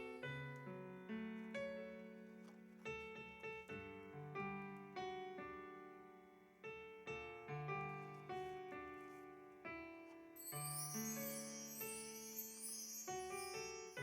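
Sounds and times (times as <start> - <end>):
soft piano music: 0.0 - 14.0.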